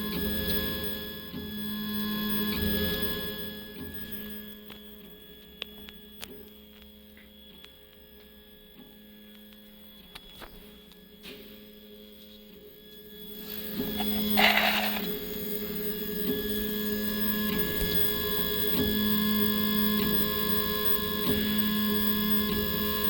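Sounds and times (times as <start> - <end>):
stepper motors humming: 13.4 - 17.3.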